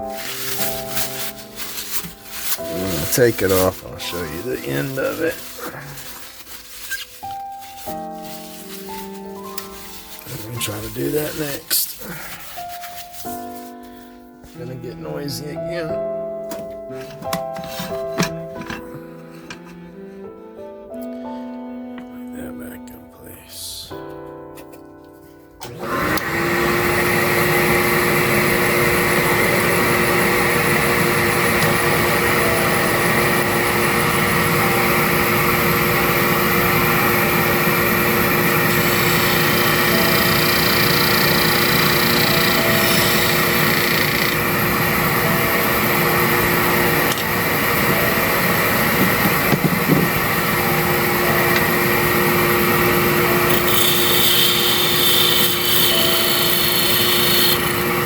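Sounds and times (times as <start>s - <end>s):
shop vacuum and lathe motor whine: 2.5s - 5.6s, 25.6s - 58.0s.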